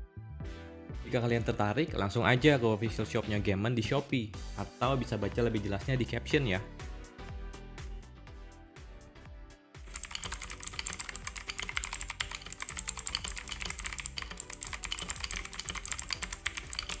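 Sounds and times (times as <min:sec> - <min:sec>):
fast typing on mechanical keyboard: 0:09.9 - 0:17.0.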